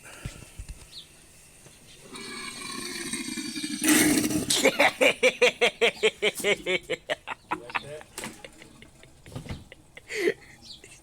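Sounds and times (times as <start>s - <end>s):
gurgling of air in plumbing: 2.0s - 4.7s
water rushing through pipes: 2.0s - 4.8s.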